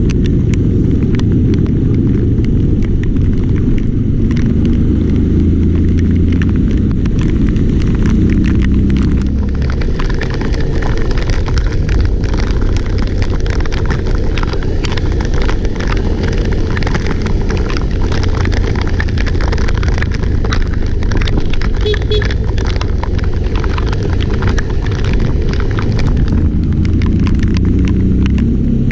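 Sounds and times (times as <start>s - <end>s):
vehicle engine running: 0.0s - 28.9s
wind buffeting microphone: 0.0s - 28.9s.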